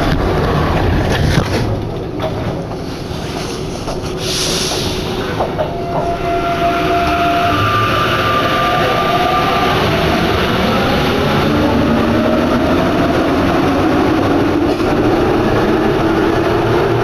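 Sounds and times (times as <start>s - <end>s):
train rolling noise: 0.0s - 17.0s
short hiss: 3.2s - 5.5s.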